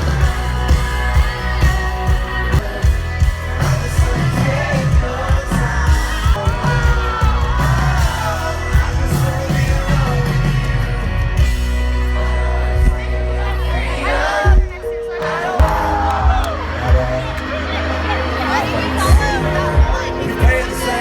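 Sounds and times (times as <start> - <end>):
person singing: 0.0 - 11.3
live band playing: 0.0 - 21.0.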